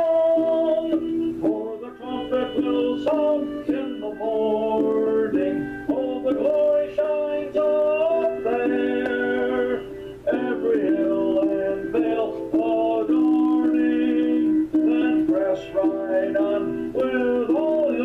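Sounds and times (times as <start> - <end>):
man singing a hymn: 0.0 - 18.0.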